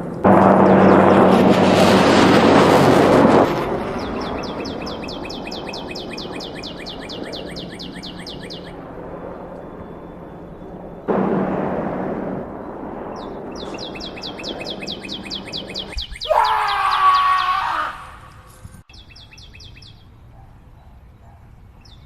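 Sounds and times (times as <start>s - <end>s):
bird singing fast trill: 4.0s - 8.8s, 13.2s - 17.5s, 18.9s - 20.1s.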